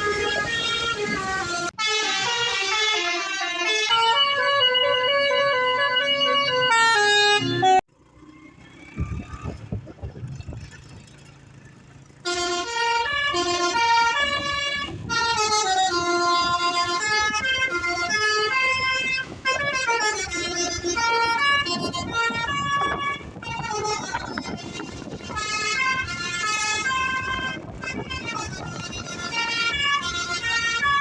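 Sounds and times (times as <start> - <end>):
bus horn playing a tune: 0.0 - 7.8, 12.2 - 31.0
low rumble: 9.0 - 11.6.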